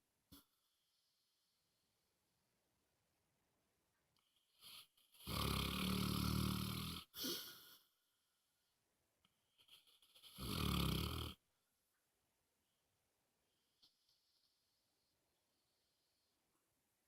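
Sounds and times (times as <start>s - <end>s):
dog snoring loudly: 5.2s - 7.2s, 10.3s - 11.4s.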